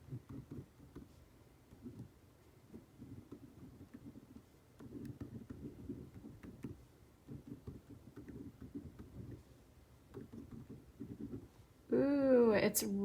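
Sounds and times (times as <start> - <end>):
pen scratching on paper: 0.0 - 11.7.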